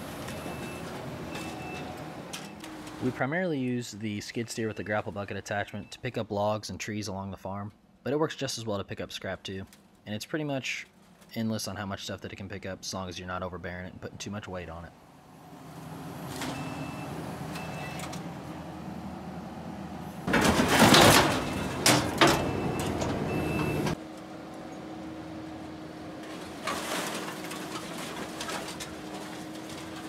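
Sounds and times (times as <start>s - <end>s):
skid steer engine running: 15.5s - 30.0s
scrap metal crashing: 20.2s - 24.0s, 26.2s - 30.0s.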